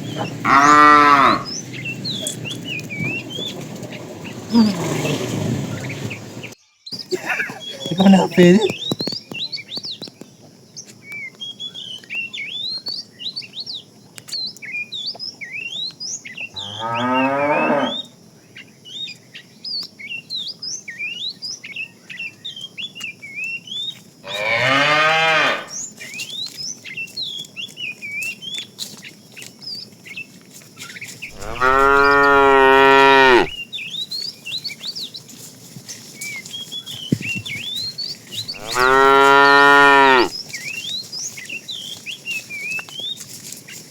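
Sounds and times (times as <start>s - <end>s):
birds chirping: 0.0s - 43.9s
cattle mooing: 0.1s - 1.5s, 4.5s - 5.4s, 7.7s - 8.7s, 16.6s - 18.0s, 24.3s - 25.7s, 31.3s - 33.6s, 38.5s - 40.3s.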